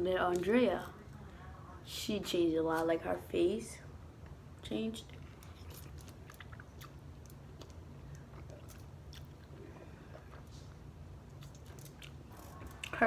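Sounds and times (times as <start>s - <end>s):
faint low hum: 0.0s - 13.0s
person chewing mouth clicks: 5.1s - 13.0s.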